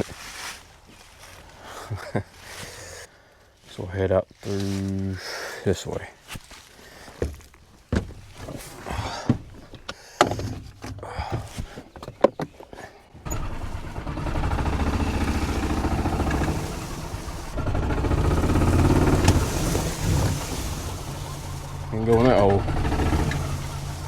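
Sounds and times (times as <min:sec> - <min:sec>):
knocks and clunks: 0:07.2 - 0:24.0
petrol engine running: 0:13.2 - 0:24.0.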